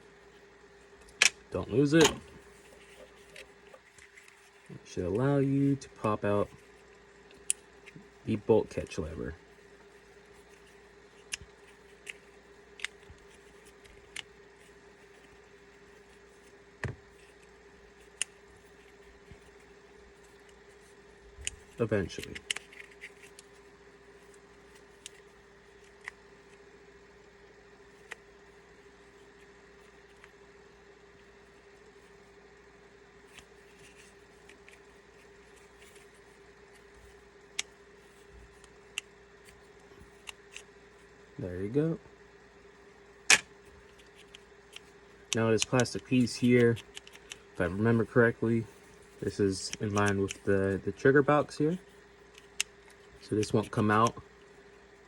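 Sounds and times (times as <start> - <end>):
faint steady hum: 0.0 - 55.0
small clicks and scrapes of parts: 1.0 - 5.2, 9.8 - 26.6, 33.3 - 40.8, 43.3 - 50.9, 51.7 - 54.5
small plastic parts clicking: 49.6 - 50.5.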